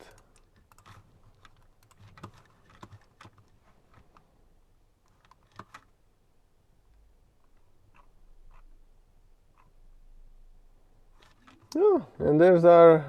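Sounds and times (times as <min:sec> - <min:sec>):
keystrokes on computer keyboard: 0:00.0 - 0:04.2, 0:05.0 - 0:05.9.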